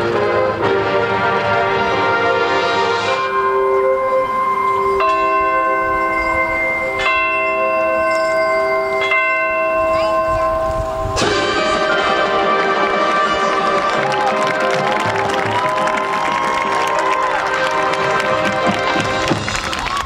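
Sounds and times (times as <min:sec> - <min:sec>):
band playing: 0:00.0 - 0:07.1, 0:11.1 - 0:20.0
bell tolling: 0:03.1 - 0:13.6.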